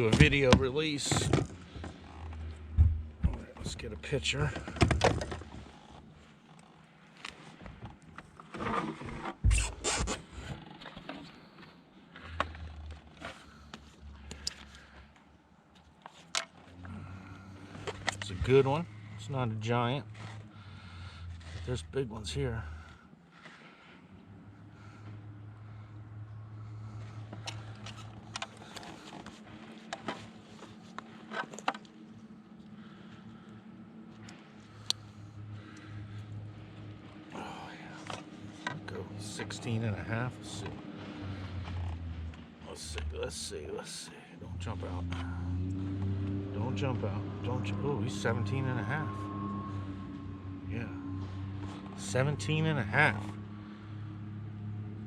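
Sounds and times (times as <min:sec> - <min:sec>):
heavy thump: 0:02.7 - 0:03.5
rustling and scraping handling: 0:07.1 - 0:15.2, 0:27.0 - 0:32.4
low steady hum: 0:16.6 - 0:55.0
fishing gear clicks and knocks: 0:27.2 - 0:32.7.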